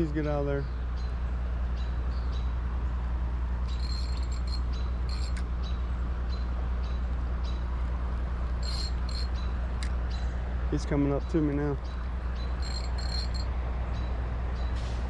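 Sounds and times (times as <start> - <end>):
high-pitched chirps: 3.7 - 5.4, 8.6 - 9.6, 12.4 - 13.5.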